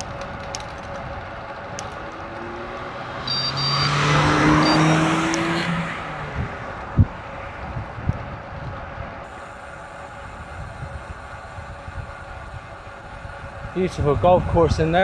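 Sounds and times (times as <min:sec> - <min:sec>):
car passing closely: 0:02.2 - 0:07.4
short high beeps: 0:03.3 - 0:04.0, 0:04.6 - 0:05.0.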